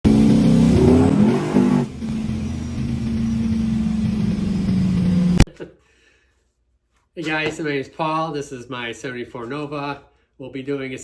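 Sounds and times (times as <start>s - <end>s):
car engine revving: 0.0s - 5.4s.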